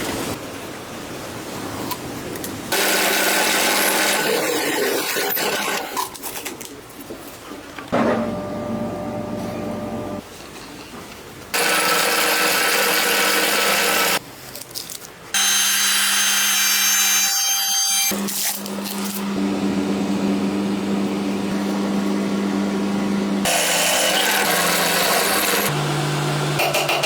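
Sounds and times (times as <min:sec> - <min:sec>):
motor hum: 0:08.0 - 0:10.2
lathe tool cutting wood: 0:11.6 - 0:14.2, 0:21.8 - 0:26.8.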